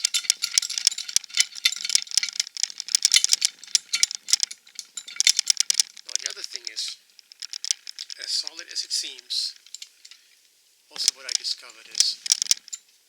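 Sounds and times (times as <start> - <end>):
metal vise jaw rattling: 0.0 - 6.4, 9.6 - 10.3, 12.2 - 12.8.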